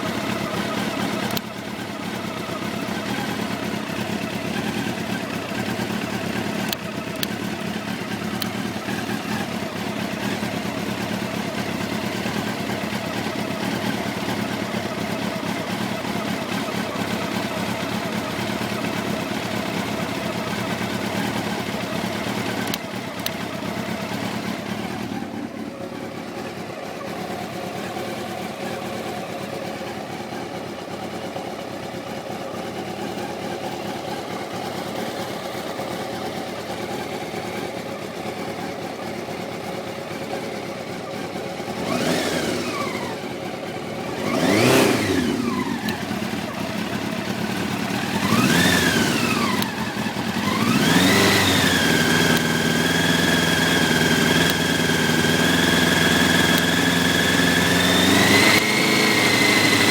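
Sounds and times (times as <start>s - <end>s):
motorcycle engine revving: 0.0s - 31.2s, 39.4s - 59.9s
motorcycle engine idling: 0.0s - 59.9s.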